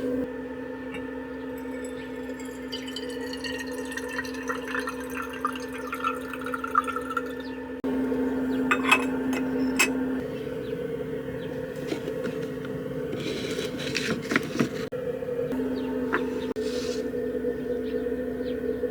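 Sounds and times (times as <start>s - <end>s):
liquid pouring into container: 1.6s - 7.6s
low hum: 6.0s - 18.9s.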